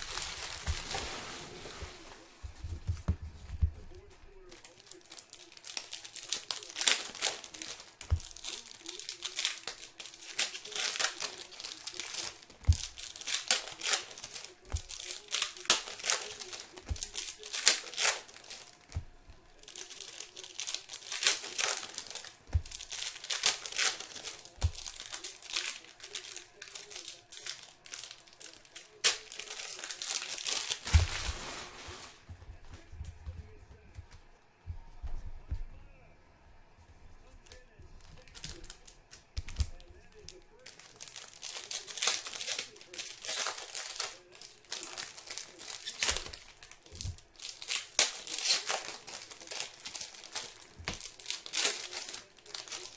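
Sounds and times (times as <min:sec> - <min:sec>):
foil wrappers tearing and crinkling: 0:00.0 - 0:32.8, 0:37.4 - 0:52.9.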